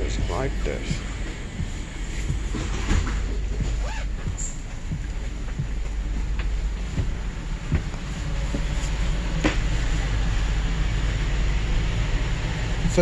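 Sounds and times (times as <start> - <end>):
light clicks and knocks: 0.0 - 9.6
train coach hum: 0.0 - 13.0.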